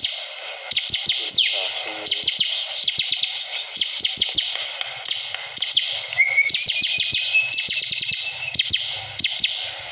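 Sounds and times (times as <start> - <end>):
bird chattering song: 0.0 - 9.8
thin held whistle: 2.1 - 9.7.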